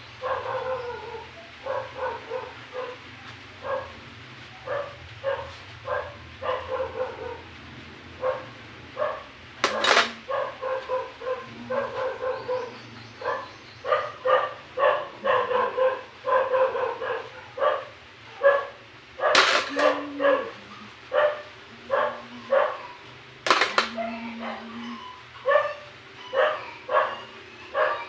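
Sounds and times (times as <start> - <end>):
dog barking: 0.2 - 7.6, 8.2 - 28.0
sharp clatter: 9.6 - 10.4, 19.3 - 20.0, 23.4 - 24.1.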